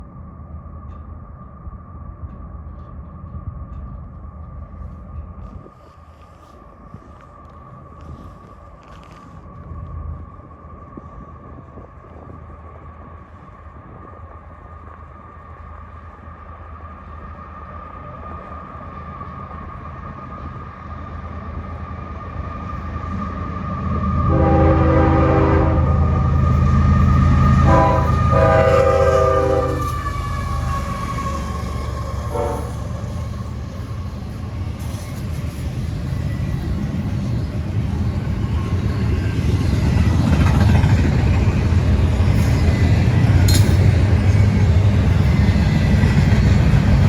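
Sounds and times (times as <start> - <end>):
diesel locomotive engine rumble: 0.0 - 47.0
locomotive air horn chord: 24.3 - 26.0, 27.6 - 30.0, 32.3 - 32.9.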